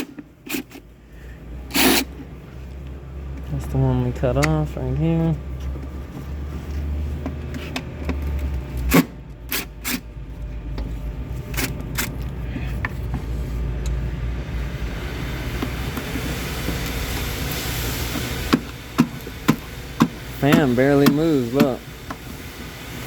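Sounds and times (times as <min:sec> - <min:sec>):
hiss: 0:01.7 - 0:02.1, 0:14.6 - 0:23.0
low rumble: 0:10.1 - 0:20.4
sharp clicks and knocks: 0:18.2 - 0:22.2.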